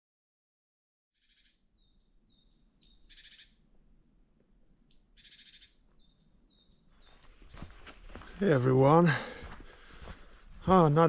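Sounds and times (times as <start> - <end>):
songbird chirps: 1.2 - 11.0
buzzy bird trills: 2.7 - 7.5.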